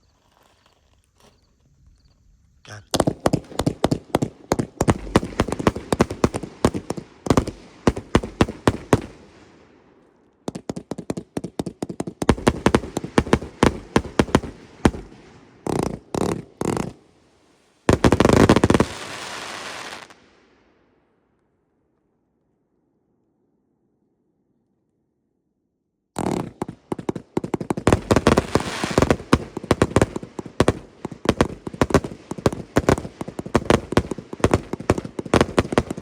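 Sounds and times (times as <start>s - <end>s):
loud crackling burst: 2.7s - 9.6s, 10.5s - 20.4s, 26.2s - 36.0s
fireworks volleys: 2.7s - 20.5s, 26.2s - 36.0s.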